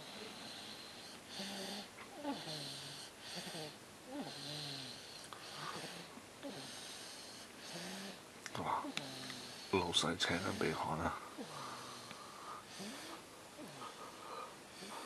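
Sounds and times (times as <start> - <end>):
wheezy snoring: 0.0 - 15.0.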